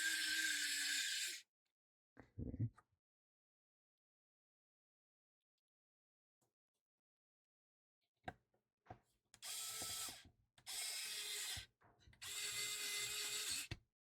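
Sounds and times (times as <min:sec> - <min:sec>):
screwdriver driving screw into plastic: 0:09.4 - 0:13.8.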